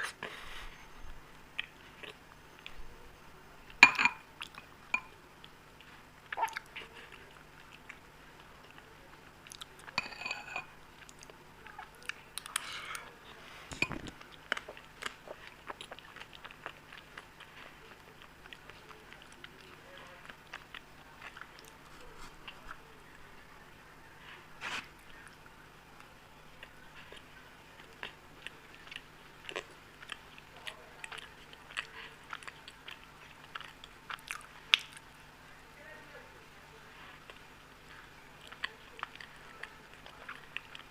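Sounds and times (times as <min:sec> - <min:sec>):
person chewing and biting: 0:13.8 - 0:22.7, 0:26.5 - 0:35.1.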